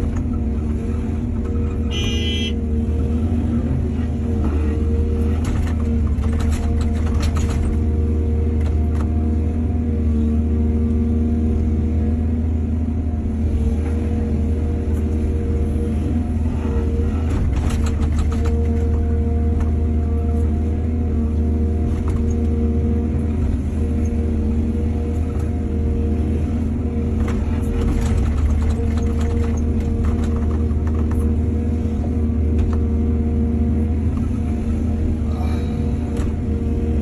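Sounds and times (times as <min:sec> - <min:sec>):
diesel engine running: 0:00.0 - 0:37.0
clatters and knocks: 0:05.4 - 0:07.9, 0:17.3 - 0:19.1, 0:27.2 - 0:31.3.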